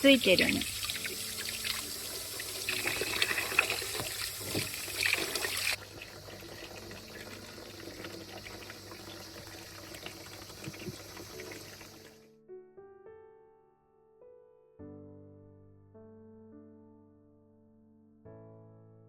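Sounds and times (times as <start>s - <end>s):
water splashing and trickling: 0.0s - 12.2s.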